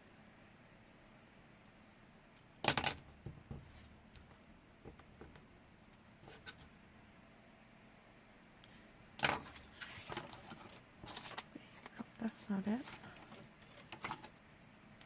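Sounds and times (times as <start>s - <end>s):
paper rustling and clattering: 8.7s - 14.3s.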